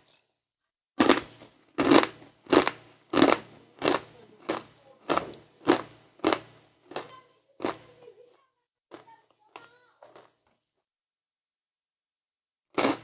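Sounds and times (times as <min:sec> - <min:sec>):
person chewing crunchy snack: 0:01.0 - 0:08.0, 0:10.1 - 0:10.4, 0:12.8 - 0:13.0.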